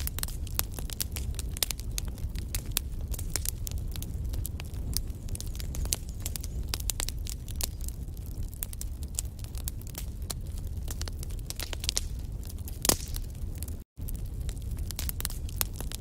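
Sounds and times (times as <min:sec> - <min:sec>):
fire crackling and popping: 0:00.0 - 0:16.0
low rumble of flames: 0:00.0 - 0:16.0.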